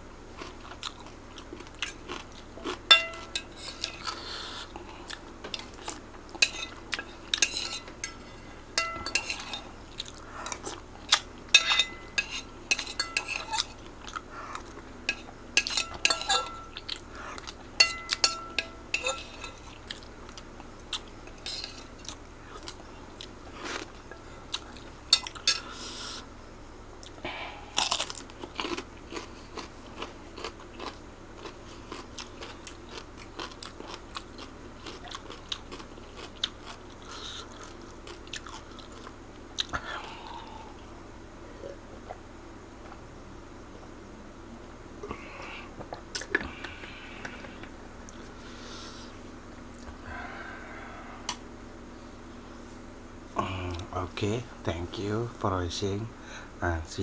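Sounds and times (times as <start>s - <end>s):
chewing and biting: 27.8s - 39.7s.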